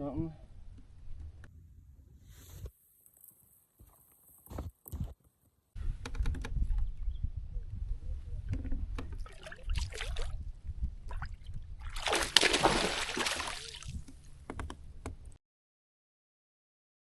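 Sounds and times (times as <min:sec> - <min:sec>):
water splashing against kayak: 0:11.9 - 0:14.2.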